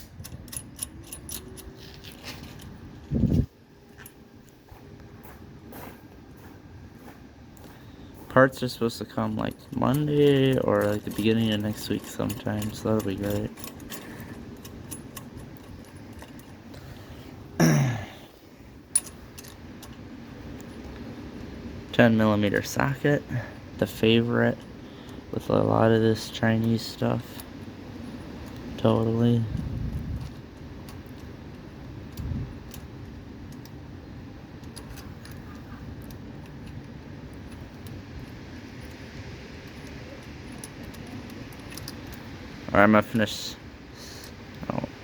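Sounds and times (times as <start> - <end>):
metallic clicks of hand tool: 0.0 - 1.8
metal clinks of tools: 0.0 - 2.8, 9.2 - 16.6
low steady rumble: 0.0 - 45.0
person grunting: 17.6 - 18.4.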